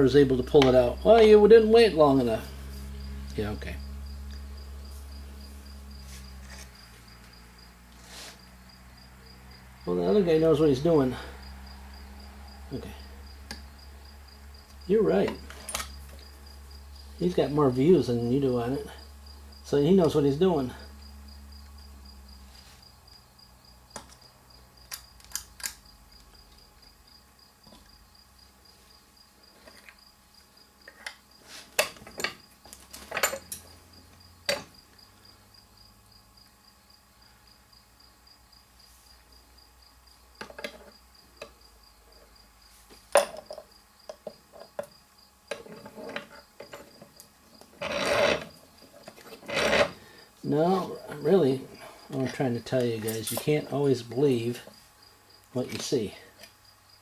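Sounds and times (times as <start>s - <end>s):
cricket chirping: 0.0s - 57.0s
scraping rub: 4.9s - 7.1s, 8.0s - 8.4s, 47.8s - 50.0s
metal tools clicking and knocking: 31.8s - 33.7s, 34.5s - 34.8s, 43.1s - 44.9s, 52.2s - 53.6s.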